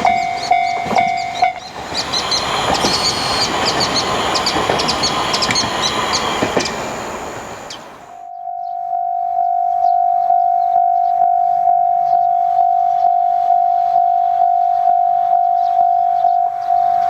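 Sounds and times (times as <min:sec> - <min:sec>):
level crossing warning bell: 0:00.0 - 0:17.0.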